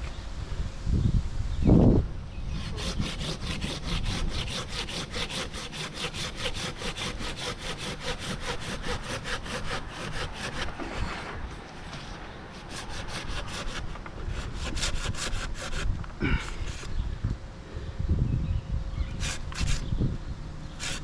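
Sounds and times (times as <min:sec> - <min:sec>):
rapid scraping strokes: 0:02.5 - 0:16.9, 0:19.1 - 0:19.9, 0:20.7 - 0:21.0.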